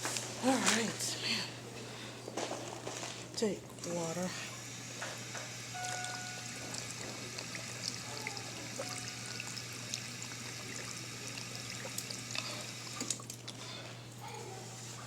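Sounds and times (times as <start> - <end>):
water trickling: 5.8 - 13.6.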